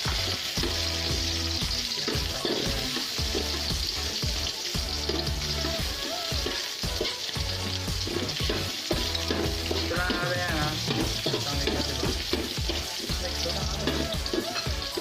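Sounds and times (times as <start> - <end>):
background music with bassline: 0.0 - 15.0
garlic and onion sizzling in oil: 0.0 - 15.0.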